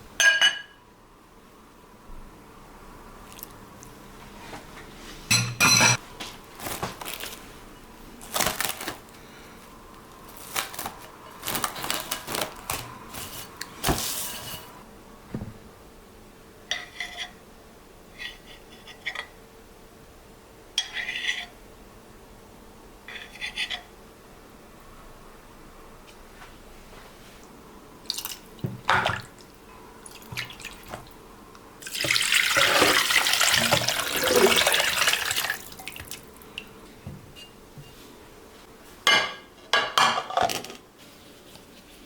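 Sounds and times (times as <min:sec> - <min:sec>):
dishes and utensils clinking: 0:00.2 - 0:00.8, 0:05.3 - 0:06.0.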